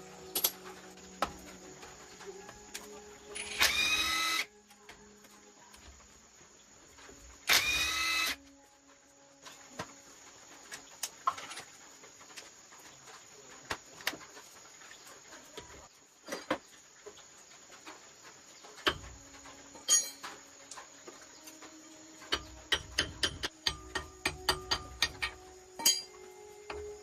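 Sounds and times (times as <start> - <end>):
high insect-like buzz: 0.0 - 11.7
tools and metal parts clicking: 0.3 - 0.7, 18.8 - 20.8, 22.3 - 26.8.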